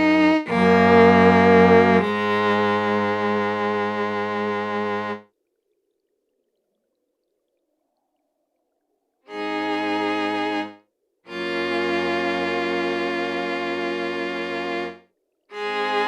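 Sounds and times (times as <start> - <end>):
bowed string notes with vibrato: 0.0 - 5.2.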